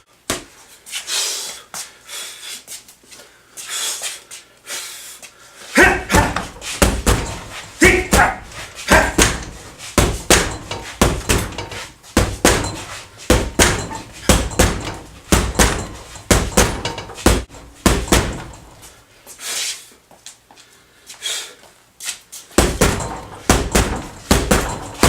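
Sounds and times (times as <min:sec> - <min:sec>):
punches hitting a refrigerator: 0:05.8 - 0:18.8, 0:22.6 - 0:25.0.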